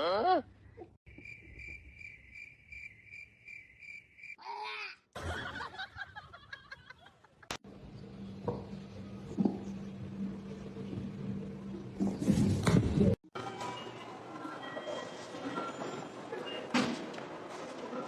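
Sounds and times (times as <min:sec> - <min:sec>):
insect chirping trill: 0:01.1 - 0:04.4.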